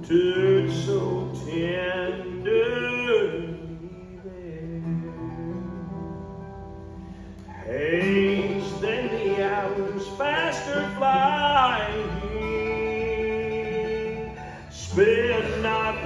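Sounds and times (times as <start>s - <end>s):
string band playing slow hymn: 0.0s - 16.0s
voices singing in harmony: 7.6s - 16.0s.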